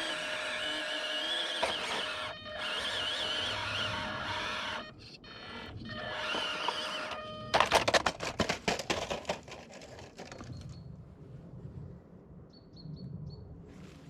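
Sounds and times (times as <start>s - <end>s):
electric motor whine: 0.0s - 7.6s
toy truck clattering on rock: 6.0s - 10.8s.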